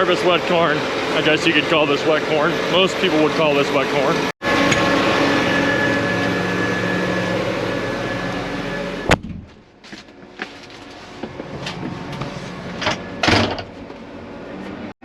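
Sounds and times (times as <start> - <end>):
tractor engine and fan hum: 0.0 - 14.9.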